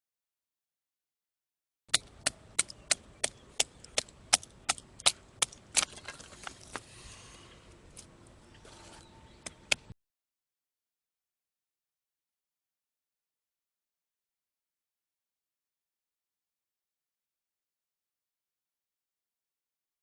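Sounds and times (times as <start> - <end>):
wood chopping strikes: 1.9 - 6.1.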